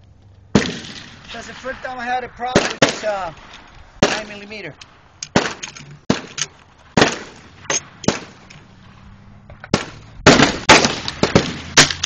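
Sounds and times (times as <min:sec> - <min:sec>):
gunshots: 0:00.5 - 0:03.3, 0:04.0 - 0:04.5, 0:05.3 - 0:08.5, 0:09.7 - 0:12.0.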